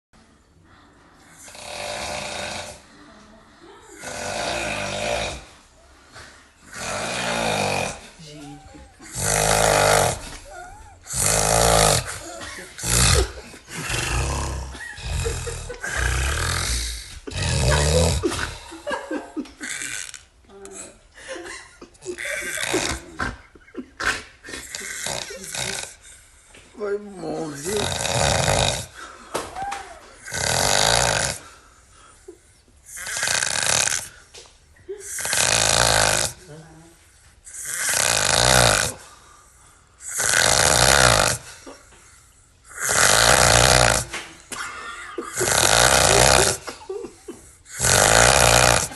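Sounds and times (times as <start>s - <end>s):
man snoring: 1.3s - 2.9s, 4.0s - 5.6s, 6.6s - 18.9s, 22.1s - 23.3s, 24.6s - 26.0s, 27.2s - 29.1s, 30.2s - 31.5s, 32.9s - 34.2s, 35.1s - 36.4s, 37.5s - 39.2s, 40.0s - 41.6s, 42.7s - 44.3s, 45.2s - 46.9s, 47.6s - 48.9s.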